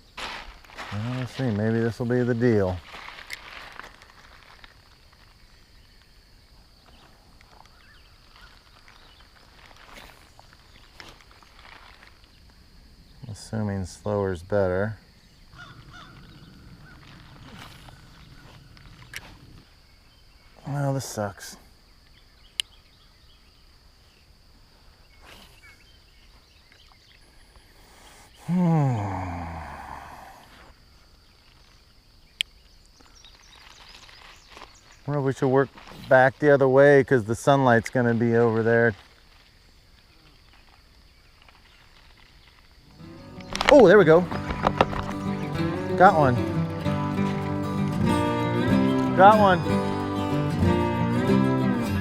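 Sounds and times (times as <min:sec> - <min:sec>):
faint bird chirps: 0:05.2 - 0:11.1, 0:15.0 - 0:20.8, 0:21.8 - 0:35.2.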